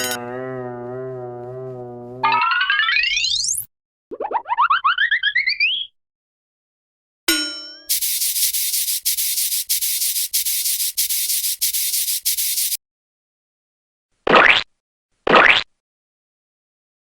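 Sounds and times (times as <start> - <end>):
rhythmic hissy scraping: 7.9 - 12.8.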